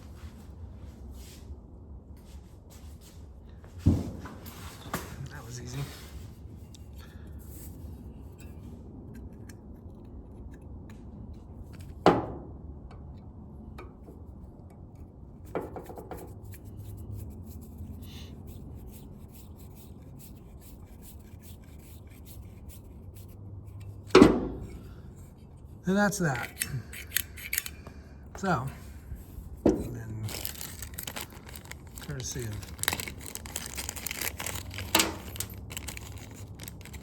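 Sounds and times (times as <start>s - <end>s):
low steady hum: 16.2s - 37.0s
small metal parts scraping: 23.2s - 28.8s, 29.8s - 37.0s.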